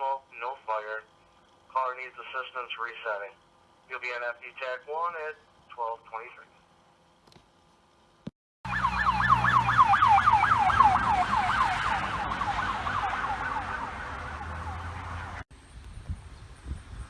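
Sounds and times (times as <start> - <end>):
low steady rumble: 0.0 - 8.3
siren on fast yelp: 8.6 - 15.4.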